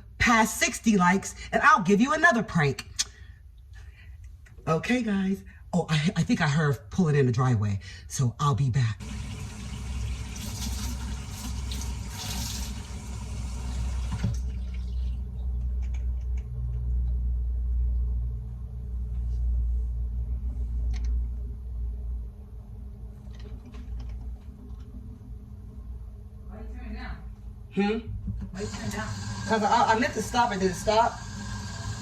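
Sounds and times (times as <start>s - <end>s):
tap water running into sink: 9.0s - 15.1s
low steady rumble: 12.9s - 28.4s.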